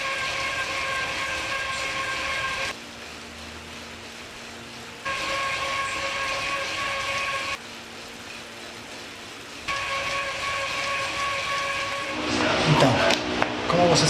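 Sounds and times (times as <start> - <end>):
bike trainer high-pitched whine: 0.0 - 14.0
bike trainer low hum: 0.0 - 14.0.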